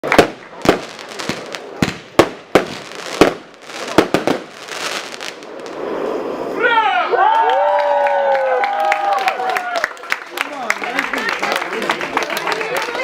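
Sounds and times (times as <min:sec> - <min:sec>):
fireworks bangs: 0:00.0 - 0:06.8
fireworks crackling: 0:00.0 - 0:06.8.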